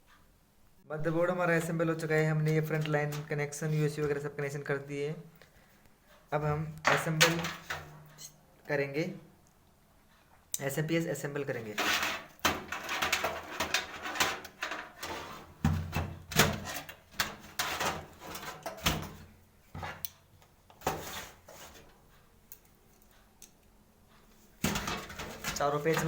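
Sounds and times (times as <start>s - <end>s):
knocks and scrapes in metal case: 6.9s - 8.0s, 11.8s - 20.0s, 20.8s - 21.9s, 24.6s - 26.0s.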